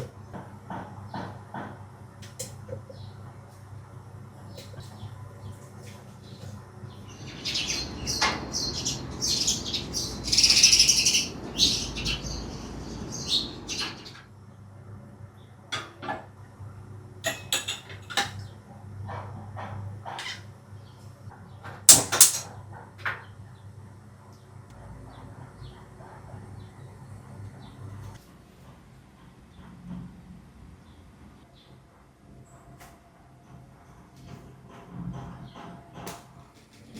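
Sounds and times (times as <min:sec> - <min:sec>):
kitchenware clatter: 0:17.2 - 0:18.4, 0:21.9 - 0:22.5
kitchenware clinks and taps: 0:17.2 - 0:18.4, 0:21.9 - 0:22.5.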